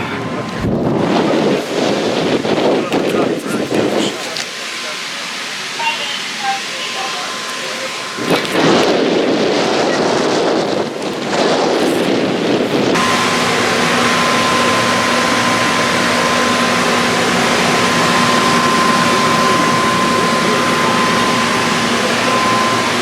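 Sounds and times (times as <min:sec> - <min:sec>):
constant hum: 0:00.0 - 0:23.0.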